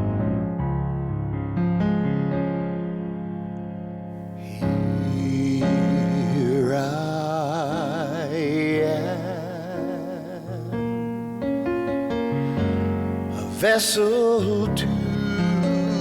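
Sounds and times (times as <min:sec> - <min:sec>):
person singing with vibrato: 0:04.4 - 0:11.3, 0:12.4 - 0:16.0.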